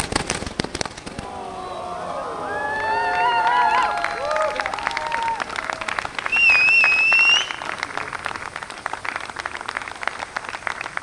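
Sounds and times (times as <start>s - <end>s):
crowd clapping: 1.0s - 11.0s
loud rising whistle: 1.2s - 7.7s.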